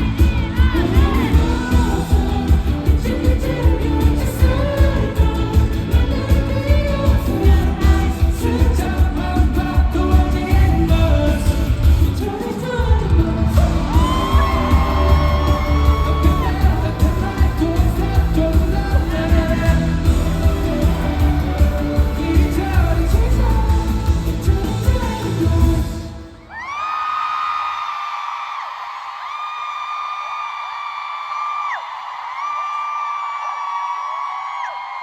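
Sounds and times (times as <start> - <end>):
man singing over bass beat: 0.0 - 26.4.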